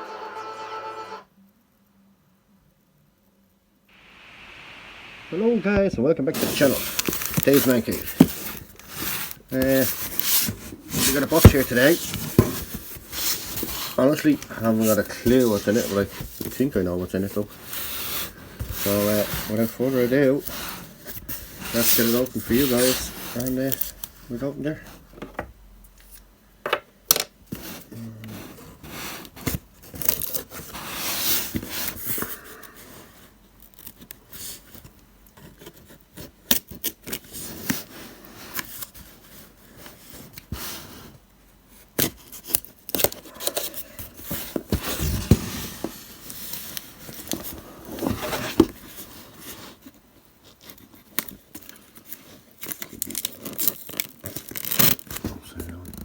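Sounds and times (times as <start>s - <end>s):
packing tape tearing: 6.4s - 14.0s, 50.6s - 56.0s
cardboard scraping and rustling: 6.4s - 25.0s, 27.5s - 32.4s, 42.0s - 56.0s.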